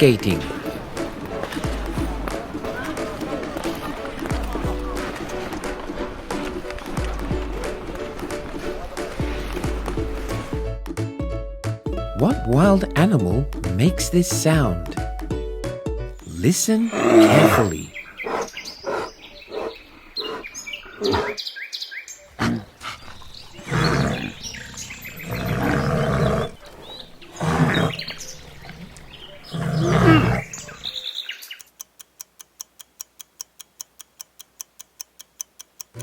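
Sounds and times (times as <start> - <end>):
bear growling: 0.0 - 10.7, 16.7 - 21.4, 22.3 - 30.9
birds chirping: 0.0 - 10.7, 16.2 - 31.8
timer ticking: 31.6 - 36.0.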